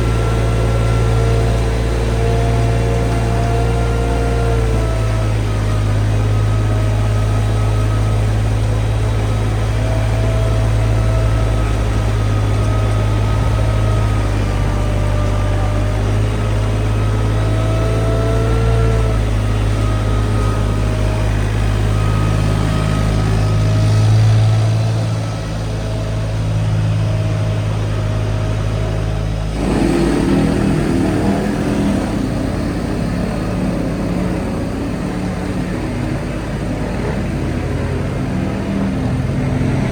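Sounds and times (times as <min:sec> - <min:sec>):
machine engine running: 0:00.0 - 0:39.9
wavering whine: 0:28.9 - 0:39.4.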